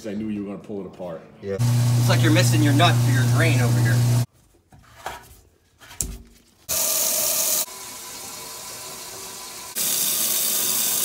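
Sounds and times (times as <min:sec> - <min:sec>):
faucet water running into sink: 0:06.7 - 0:11.0.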